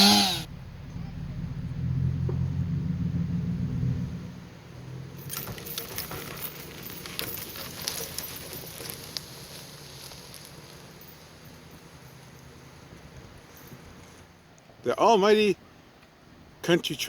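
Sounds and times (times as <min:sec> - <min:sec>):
dry twigs crackling and snapping: 0:05.5 - 0:11.3.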